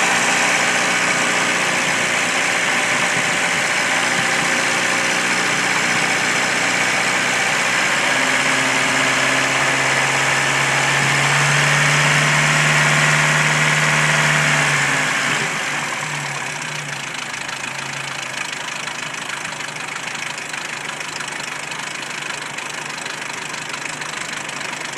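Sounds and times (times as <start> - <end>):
car engine running with a knock: 0.9 - 6.4.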